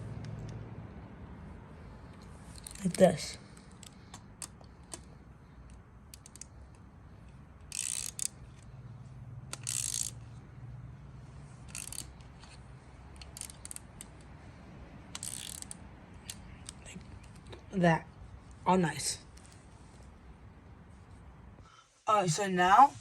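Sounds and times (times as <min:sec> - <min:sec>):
ratchet wrench clicking: 0:02.5 - 0:08.8, 0:09.5 - 0:10.4, 0:11.6 - 0:14.3, 0:15.1 - 0:17.5.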